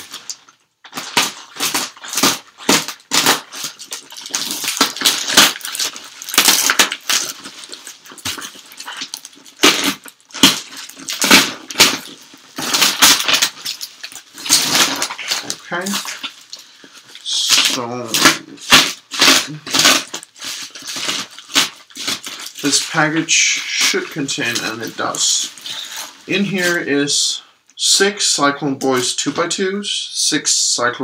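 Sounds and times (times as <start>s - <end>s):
packaging rustling and crinkling: 0.0s - 26.9s.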